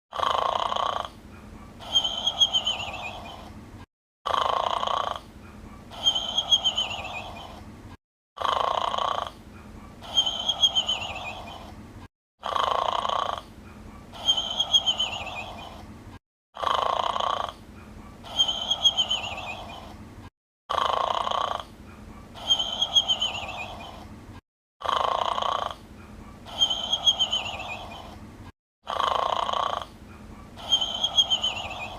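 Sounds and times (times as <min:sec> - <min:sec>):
cartoon character snoring: 0:00.1 - 0:01.2, 0:04.3 - 0:05.3, 0:08.4 - 0:09.4, 0:12.4 - 0:14.6, 0:16.6 - 0:17.6, 0:20.7 - 0:21.7, 0:24.8 - 0:25.9, 0:28.8 - 0:30.0.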